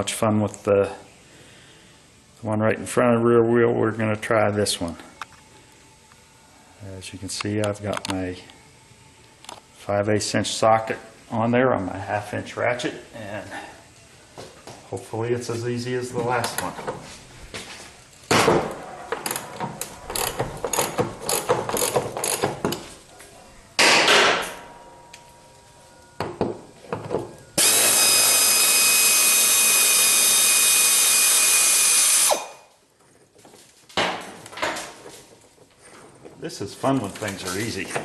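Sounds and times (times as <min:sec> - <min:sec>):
ratchet clicking: 0:19.2 - 0:22.6
loud whirring noise: 0:27.5 - 0:32.6.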